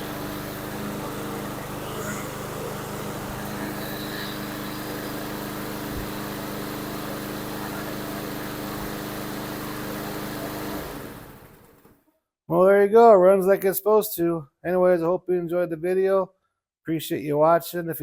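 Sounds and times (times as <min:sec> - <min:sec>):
lawn mower engine running: 0:00.0 - 0:12.0.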